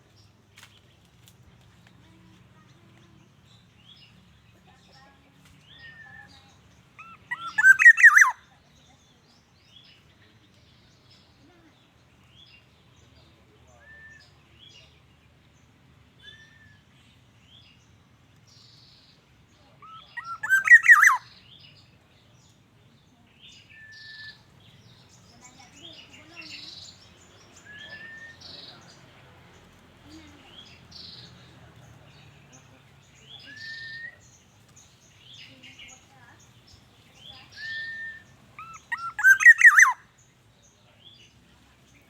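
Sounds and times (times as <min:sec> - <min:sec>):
faint bird chirps: 0:02.0 - 0:15.6, 0:16.2 - 0:42.0
oriole calling: 0:07.0 - 0:08.4, 0:19.8 - 0:21.3, 0:37.4 - 0:40.1.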